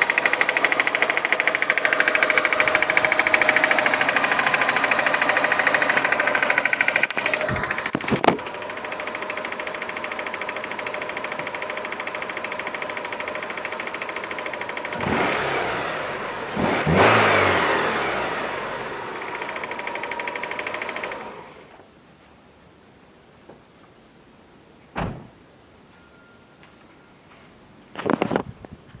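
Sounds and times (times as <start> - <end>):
engine revving: 0.0 - 21.6
car engine idling: 0.0 - 21.7.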